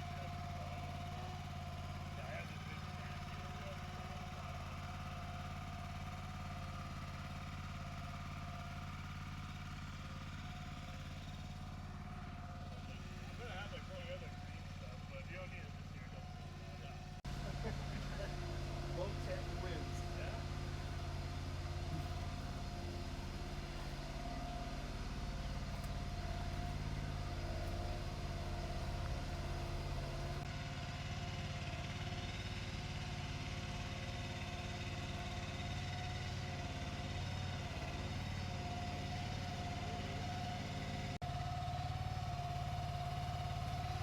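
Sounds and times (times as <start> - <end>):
vehicle engine idling: 0.0 - 44.0.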